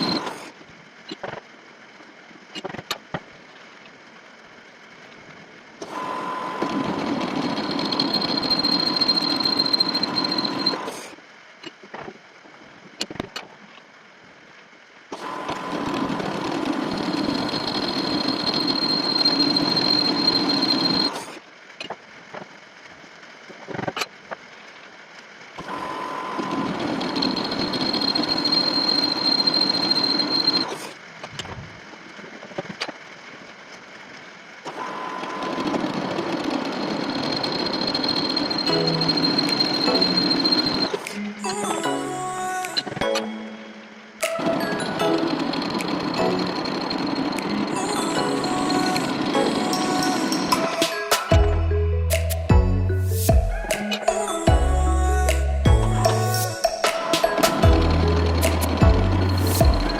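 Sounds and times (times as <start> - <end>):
lathe cutting with whistle: 0.0 - 0.3, 5.9 - 11.0, 16.9 - 21.3, 25.7 - 30.8, 36.7 - 41.0
lathe running: 0.0 - 0.4, 5.8 - 10.9, 25.7 - 30.8, 34.7 - 41.0, 55.3 - 59.9
clicks: 55.3 - 59.9.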